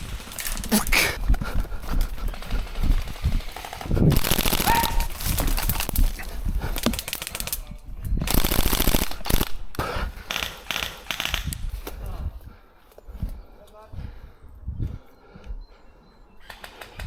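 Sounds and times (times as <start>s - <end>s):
airsoft rifles full-auto bursts: 2.3s - 5.9s, 6.8s - 7.6s, 8.2s - 11.7s.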